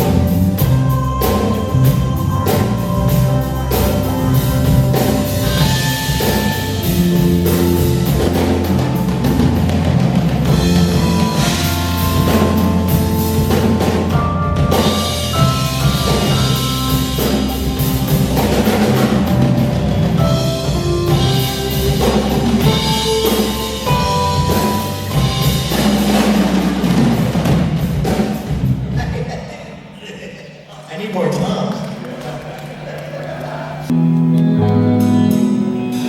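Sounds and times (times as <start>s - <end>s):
held pitched notes: 0.0s - 27.4s
bass line: 0.0s - 29.1s
drum kit: 0.0s - 30.0s, 33.6s - 36.0s.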